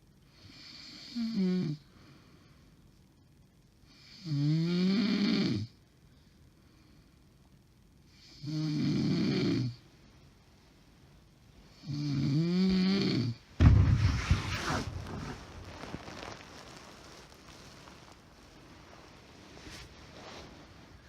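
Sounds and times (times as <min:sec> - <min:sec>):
quiet breathing: 0:00.2 - 0:03.1, 0:05.6 - 0:09.0
woman snoring heavily: 0:00.4 - 0:01.8, 0:04.0 - 0:05.7, 0:08.2 - 0:09.8, 0:11.8 - 0:13.4
sudden loud noise: 0:13.6 - 0:18.0.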